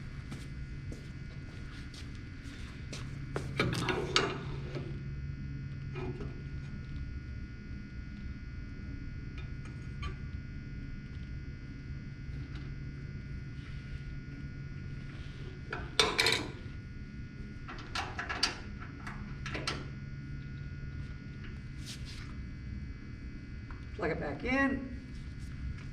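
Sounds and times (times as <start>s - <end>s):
background hum: 0.0s - 25.9s.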